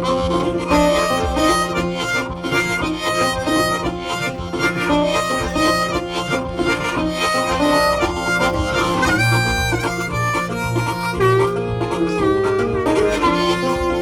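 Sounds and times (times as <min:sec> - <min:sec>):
blues harmonica with bass line: 0:00.0 - 0:14.0.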